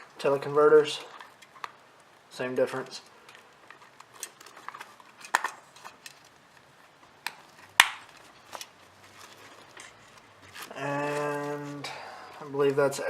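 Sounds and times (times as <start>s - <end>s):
camera accessories clicking and knocking: 3.3s - 6.3s.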